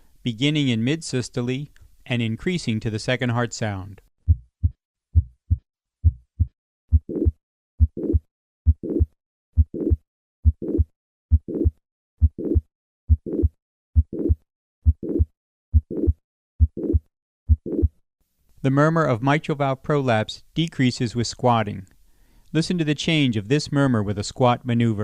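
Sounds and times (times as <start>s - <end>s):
heartbeat: 4.2s - 18.0s
heart murmur: 4.3s - 17.9s.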